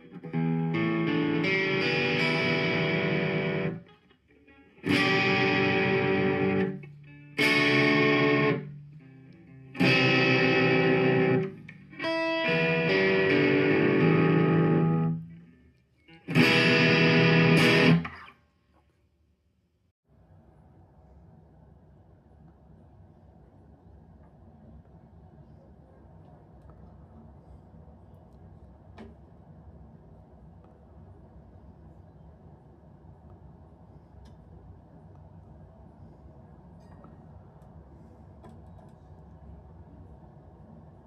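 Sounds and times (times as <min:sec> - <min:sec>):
guitar chords ringing: 0:00.0 - 0:03.9, 0:04.6 - 0:15.3, 0:16.2 - 0:18.2.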